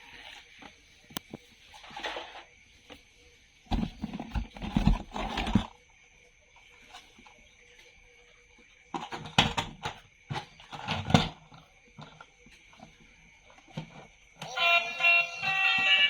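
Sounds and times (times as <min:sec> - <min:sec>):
music: 0:14.4 - 0:16.0.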